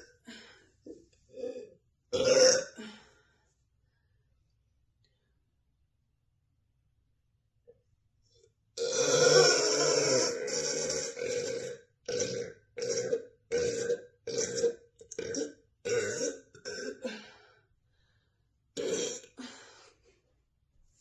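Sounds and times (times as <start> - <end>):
woman burping: 2.2 - 2.9, 8.8 - 17.2, 18.8 - 19.5.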